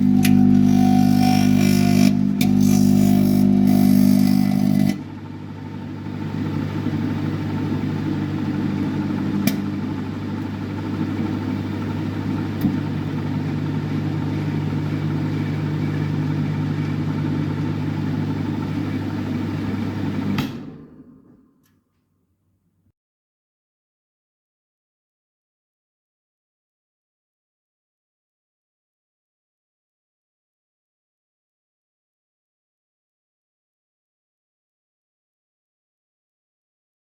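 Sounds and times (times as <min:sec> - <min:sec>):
microwave oven humming: 0:00.0 - 0:21.7.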